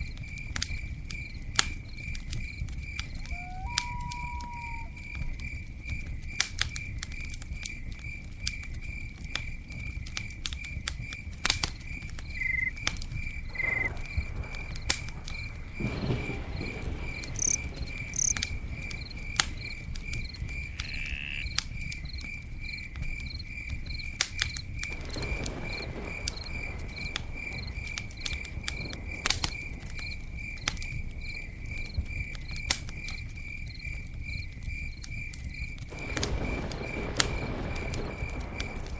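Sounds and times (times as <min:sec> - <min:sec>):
campfire crackling and popping: 0:00.0 - 0:38.9
cricket chirping: 0:00.0 - 0:38.9
brief high calls: 0:20.7 - 0:21.5.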